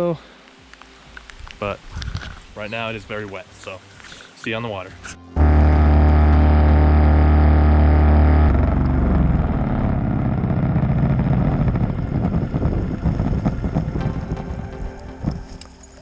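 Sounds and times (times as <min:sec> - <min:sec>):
boat motor running: 0:05.4 - 0:15.4.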